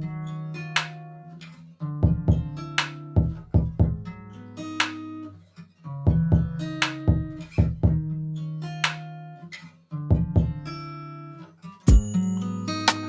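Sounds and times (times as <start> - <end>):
bright high accents: 11.9 - 13.0
plucked guitar notes: 11.9 - 13.0.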